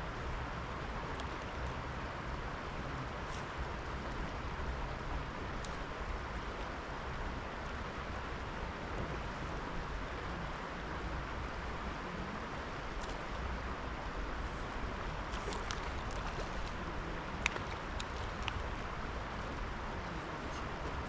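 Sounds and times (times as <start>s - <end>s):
river water rushing: 0.0s - 21.0s
faint small clicks: 17.4s - 18.7s.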